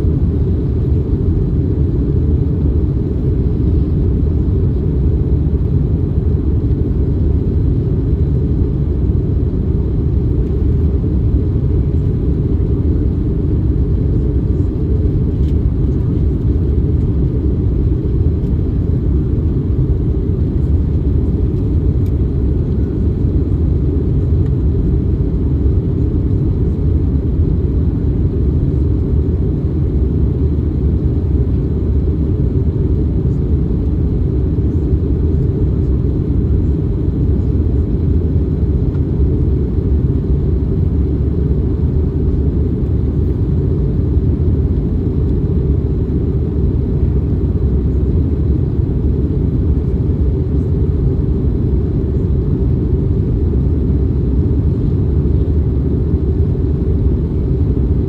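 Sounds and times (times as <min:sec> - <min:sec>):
aircraft cabin rumble: 0:00.0 - 0:58.0.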